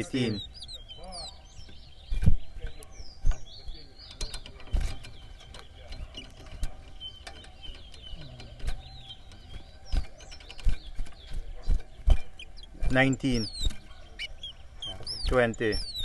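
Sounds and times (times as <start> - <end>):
finches whistling: 0.0 - 16.0
sharp clicks and knocks: 0.0 - 16.0.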